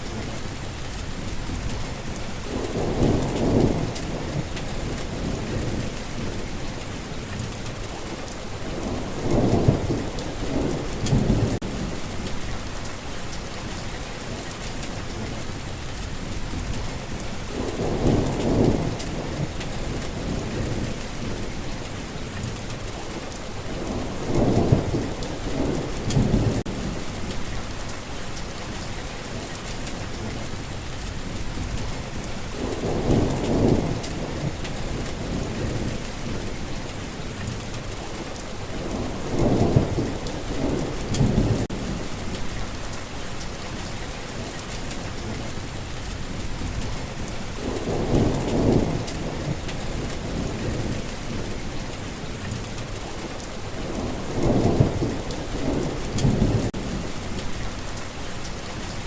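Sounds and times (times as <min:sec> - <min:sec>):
steady rain: 0:00.0 - 0:59.0
thunder rolling: 0:01.2 - 0:06.7, 0:08.7 - 0:12.9, 0:16.2 - 0:21.8, 0:23.6 - 0:27.9, 0:31.2 - 0:37.2, 0:38.6 - 0:43.0, 0:46.2 - 0:58.0.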